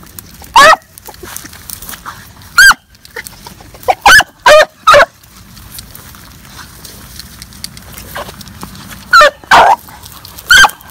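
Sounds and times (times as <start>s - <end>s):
hound baying in high yelps: 0.5s - 0.9s, 2.6s - 2.9s, 3.8s - 5.2s, 9.1s - 10.9s.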